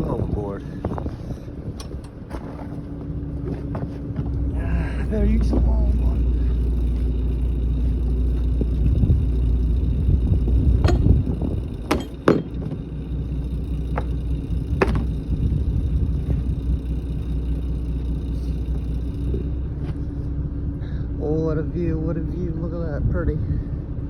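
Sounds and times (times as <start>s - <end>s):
boat engine rumbling: 0.0s - 24.0s
sharp knocks: 10.8s - 12.9s, 14.8s - 15.2s.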